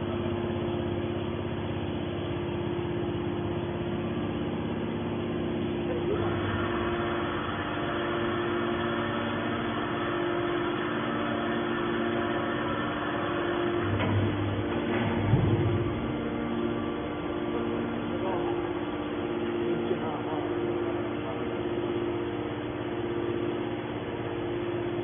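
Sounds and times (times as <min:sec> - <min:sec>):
baler machine hum: 0:00.0 - 0:25.0.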